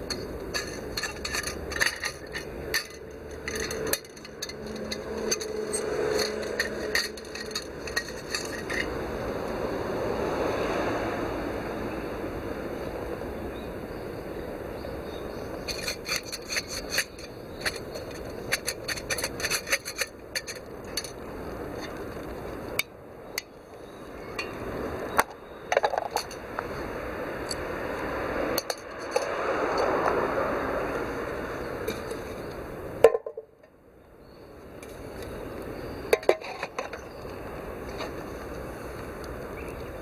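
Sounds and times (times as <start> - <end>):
rubbing and scraping: 0.0 - 9.0, 15.6 - 22.3.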